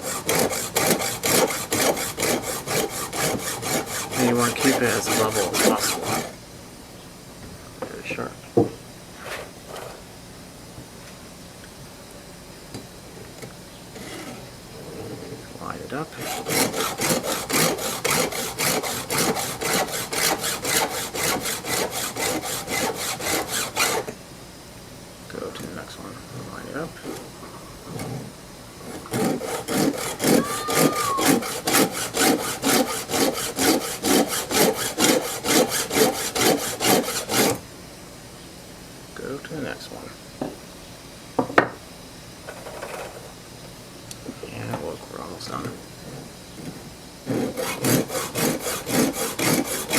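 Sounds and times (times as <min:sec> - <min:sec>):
file stroking chainsaw chain: 0:00.0 - 0:06.3, 0:47.3 - 0:49.9
file rasping on chainsaw chain: 0:00.0 - 0:06.4, 0:16.2 - 0:24.1, 0:28.8 - 0:37.6, 0:47.3 - 0:49.9.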